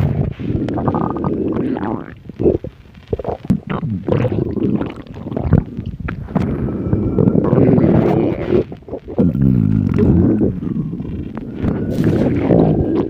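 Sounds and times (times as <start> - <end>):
stomach growling: 0.0 - 13.0.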